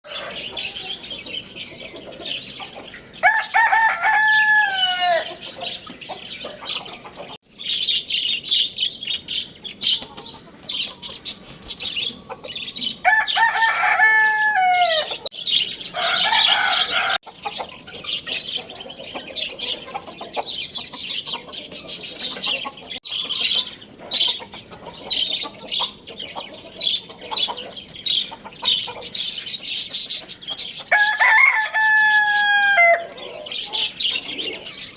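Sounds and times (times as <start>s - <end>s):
birds chirping: 0.1s - 34.9s
rooster crowing: 3.2s - 5.3s, 13.0s - 15.3s, 15.9s - 17.2s, 30.9s - 33.2s.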